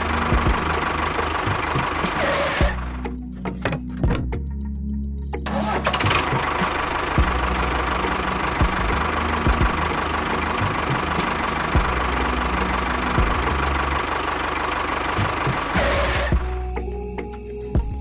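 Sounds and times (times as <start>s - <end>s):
knocks and clicks: 3.4s - 4.6s.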